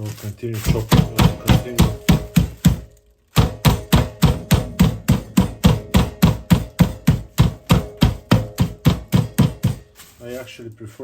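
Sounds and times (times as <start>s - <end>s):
rolling pin pounding meat: 0.6s - 10.0s.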